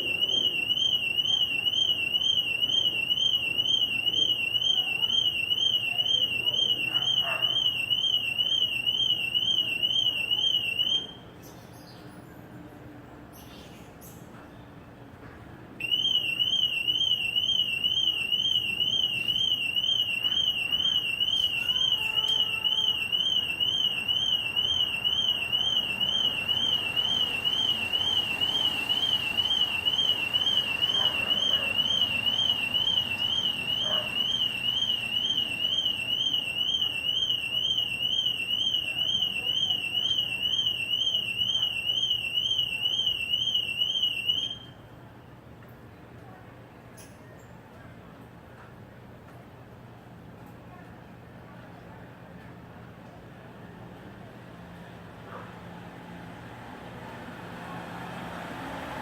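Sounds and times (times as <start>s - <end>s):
car alarm siren warbling: 0.0s - 11.2s, 15.8s - 44.8s.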